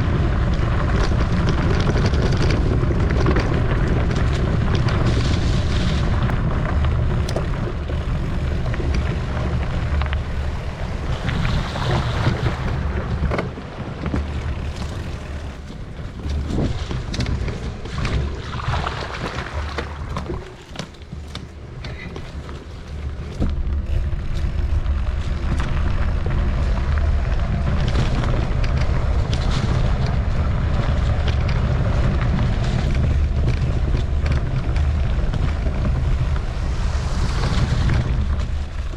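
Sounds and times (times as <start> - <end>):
bike clicks and rattles: 0.0 - 38.9
wind buffeting microphone: 0.0 - 38.9.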